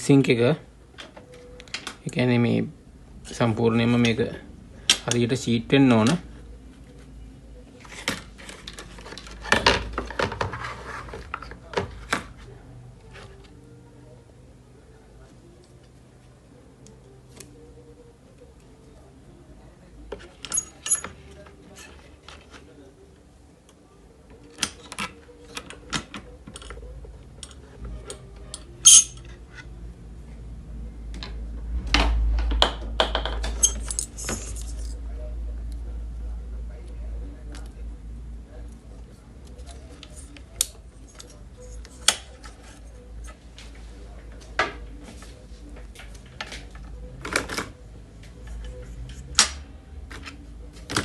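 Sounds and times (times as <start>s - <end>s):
metal tools clinking on workbench: 20.4s - 21.2s, 28.8s - 29.4s, 33.5s - 34.9s.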